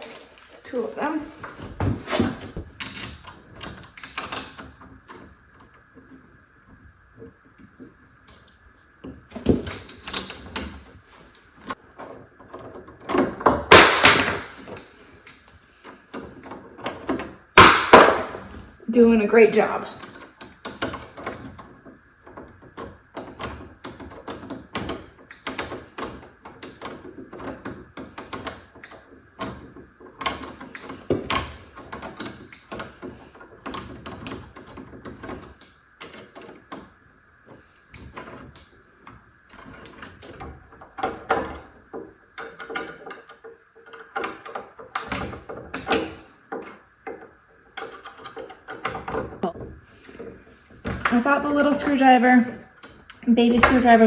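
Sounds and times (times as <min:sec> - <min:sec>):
metal clicks and rattles: 0:19.9 - 0:52.1.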